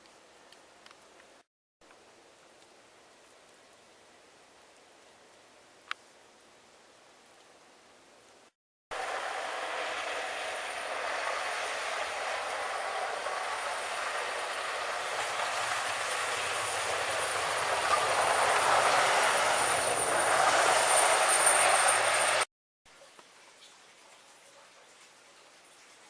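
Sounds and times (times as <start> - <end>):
thin high whine: 8.9 - 22.5
vehicle rushing through snow: 8.9 - 22.5.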